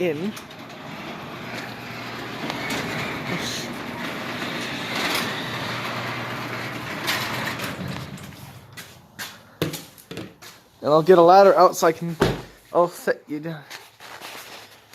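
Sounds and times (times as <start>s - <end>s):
garage door motor hum: 0.0s - 8.8s
door rattling up tracks: 0.0s - 8.9s.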